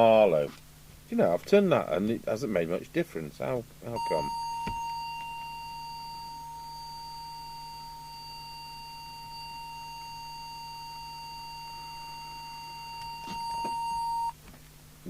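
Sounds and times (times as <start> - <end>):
low hum: 3.8 - 14.4
steady test tone: 3.8 - 14.4.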